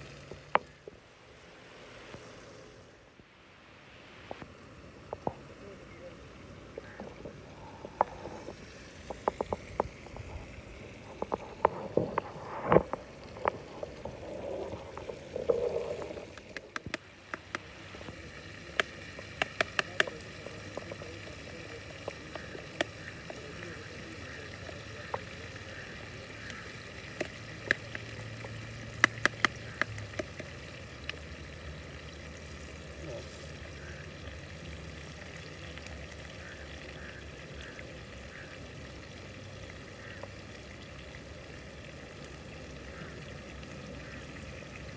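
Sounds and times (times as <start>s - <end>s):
steady background hiss: 0.0s - 28.9s.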